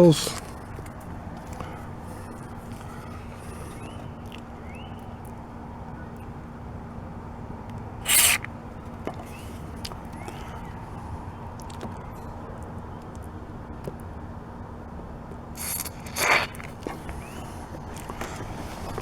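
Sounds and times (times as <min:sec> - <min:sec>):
low background hum: 0:00.0 - 0:19.0
aerosol spray hiss: 0:08.1 - 0:08.4.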